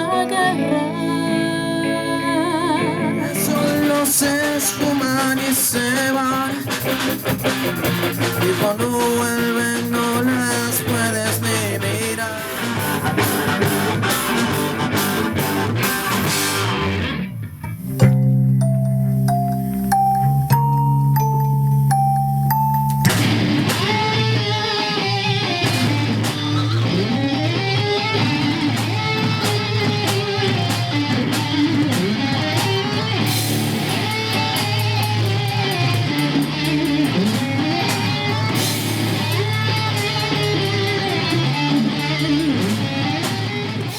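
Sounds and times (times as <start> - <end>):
electric guitar lead lines: 0.0 - 43.9
bass and drums: 3.4 - 43.9
held keyboard chord: 18.0 - 25.2.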